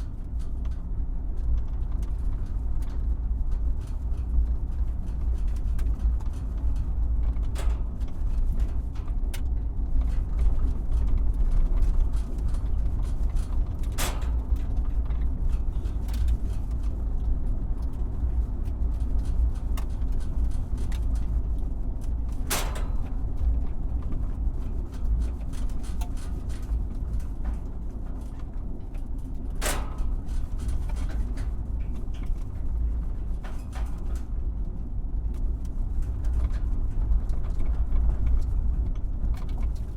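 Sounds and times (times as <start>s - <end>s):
tyres rumbling on bumpy road: 0.0s - 39.9s
sharp knocks and rattles: 22.3s - 24.2s.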